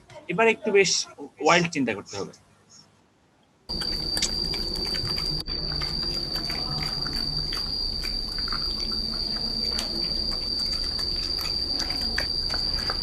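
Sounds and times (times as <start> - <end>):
pig chewing and crunching: 3.7 - 13.0
steady high-pitched tone: 3.7 - 13.0.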